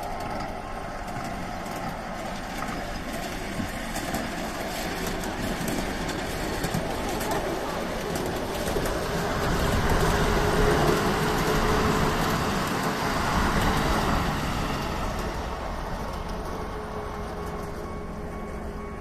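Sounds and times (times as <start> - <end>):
passing vehicle rumbling: 4.6 - 19.0.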